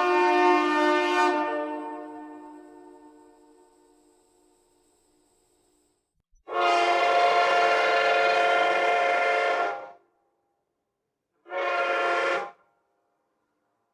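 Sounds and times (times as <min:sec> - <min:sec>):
train horn blasts: 0:00.0 - 0:04.1, 0:06.5 - 0:10.1, 0:11.4 - 0:12.6.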